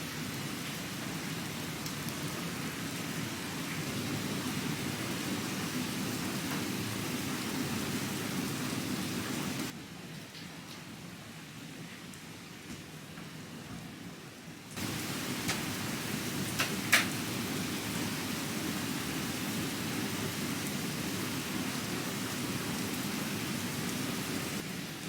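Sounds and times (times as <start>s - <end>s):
steady rain falling: 0.0s - 25.0s.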